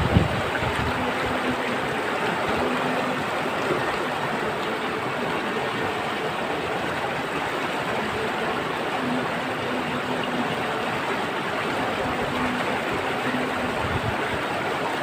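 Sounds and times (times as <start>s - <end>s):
water flowing: 0.0s - 15.0s.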